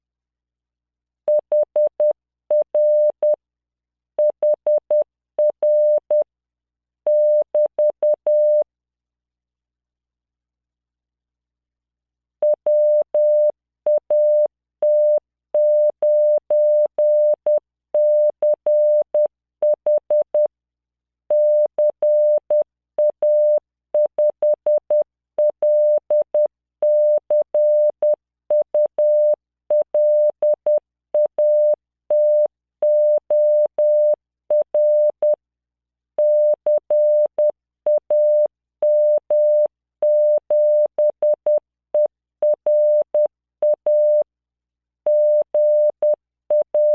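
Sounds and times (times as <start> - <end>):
morse code tone: 36.2 - 44.2, 45.1 - 46.9.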